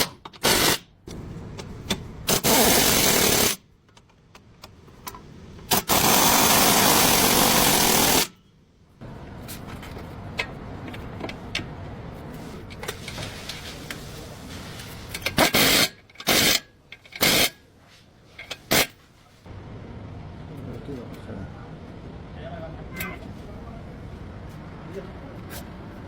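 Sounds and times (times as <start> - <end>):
workshop background: 0.0 - 26.0.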